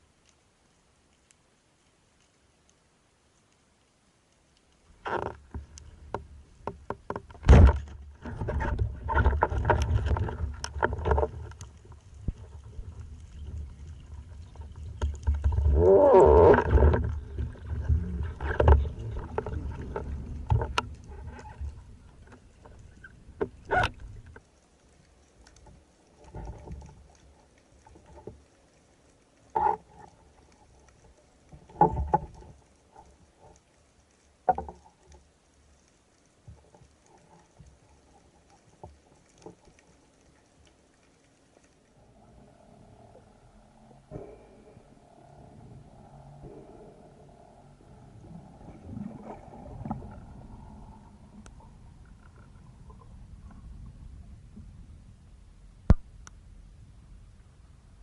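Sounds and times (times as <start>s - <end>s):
underwater bubbling and gurgling: 0.0s - 58.0s
underwater knocks and clicks: 5.0s - 24.5s, 29.4s - 33.7s, 34.4s - 35.2s, 55.9s - 56.4s.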